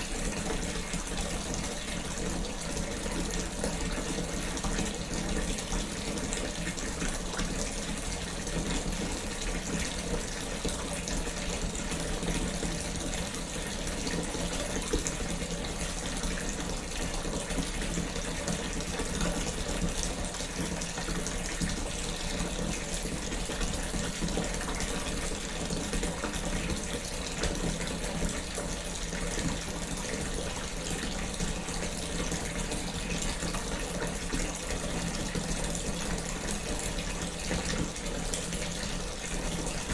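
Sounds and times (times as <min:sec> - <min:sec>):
water pouring into bathtub: 0:00.0 - 0:39.9.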